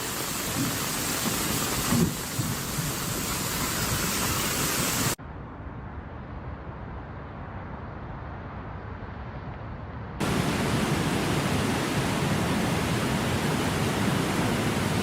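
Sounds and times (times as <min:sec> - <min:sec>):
heavy rain hissing: 0:00.0 - 0:05.2, 0:10.2 - 0:15.0
dull steady rushing noise: 0:00.0 - 0:15.0
wind thumps on microphone: 0:00.1 - 0:05.1.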